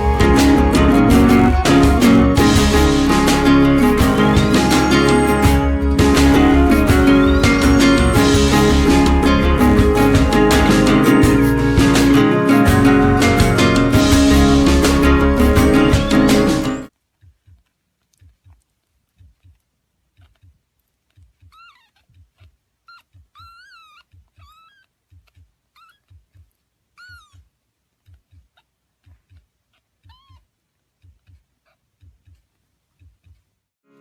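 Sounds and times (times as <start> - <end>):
cat meowing: 27.0 - 27.4, 30.1 - 30.4.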